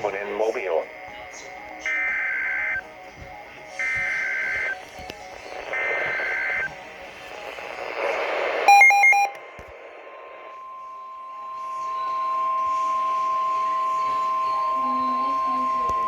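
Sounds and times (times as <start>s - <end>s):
alternating high and low beeps: 0.8s - 2.9s, 3.7s - 6.7s, 8.6s - 16.0s.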